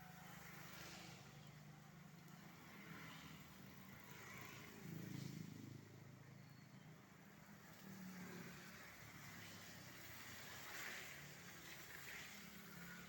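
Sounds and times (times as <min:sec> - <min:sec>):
faint vehicle engine hum: 0:00.0 - 0:13.0.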